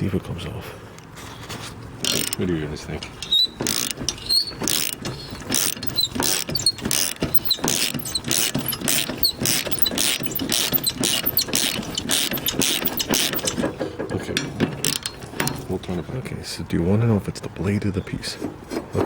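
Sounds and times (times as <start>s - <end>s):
ratchet wrench clicking: 2.0s - 2.4s, 3.2s - 13.6s
faint high squeaks: 3.1s - 13.6s.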